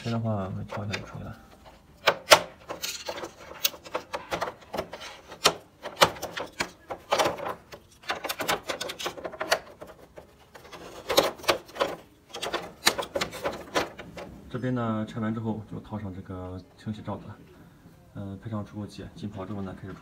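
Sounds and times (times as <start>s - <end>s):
plastic louvers clicking and knocking: 0.6s - 14.3s.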